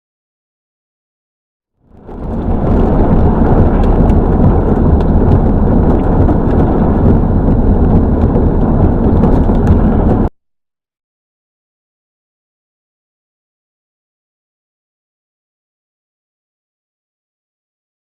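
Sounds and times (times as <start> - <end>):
rain driving down: 1.9 - 10.3
wind buffeting microphone: 1.9 - 10.3.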